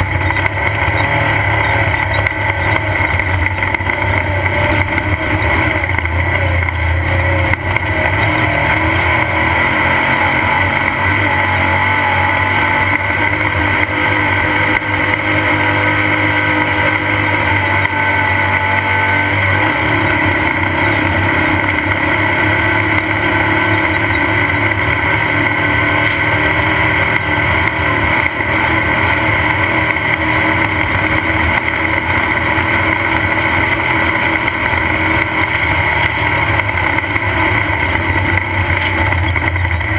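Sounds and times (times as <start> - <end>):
race car engine running: 0.0 - 39.9.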